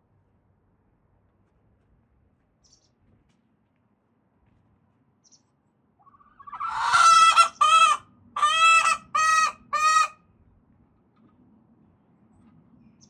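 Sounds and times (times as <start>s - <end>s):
hen squawking: 6.0s - 10.1s.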